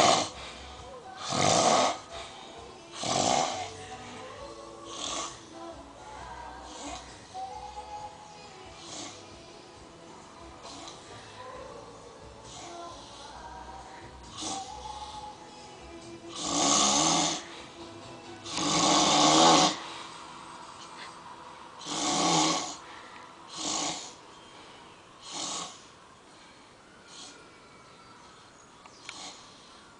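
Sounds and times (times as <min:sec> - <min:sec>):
man snoring loudly: 0:00.0 - 0:00.4, 0:01.2 - 0:02.2, 0:02.9 - 0:03.8, 0:04.7 - 0:05.5, 0:08.8 - 0:09.3, 0:14.2 - 0:15.2, 0:16.3 - 0:17.5, 0:18.4 - 0:19.9, 0:21.8 - 0:22.8, 0:23.5 - 0:24.2, 0:25.2 - 0:25.9.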